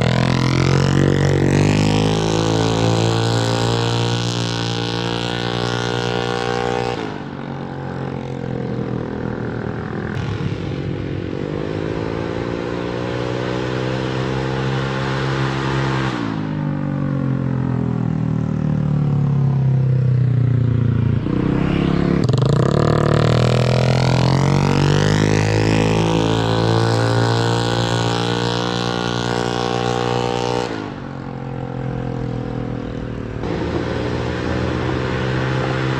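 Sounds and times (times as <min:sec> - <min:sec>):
motorcycle engine revving: 0:00.0 - 0:35.9.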